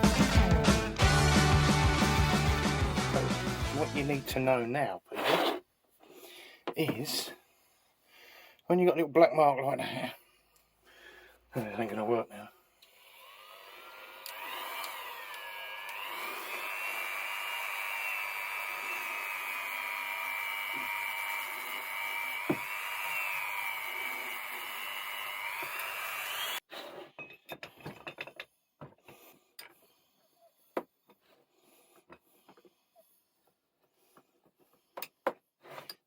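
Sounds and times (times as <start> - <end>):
power tool motor whining: 12.9 - 26.6.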